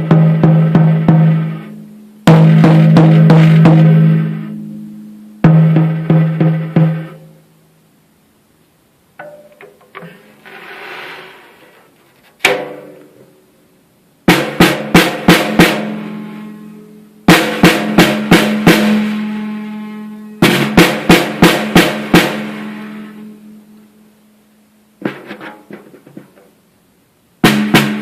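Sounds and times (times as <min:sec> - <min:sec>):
snare rattle ringing: 0:09.2 - 0:10.0
snare drum hits: 0:12.4 - 0:13.0, 0:14.3 - 0:16.2, 0:17.3 - 0:19.4, 0:20.4 - 0:22.7, 0:27.4 - 0:28.0.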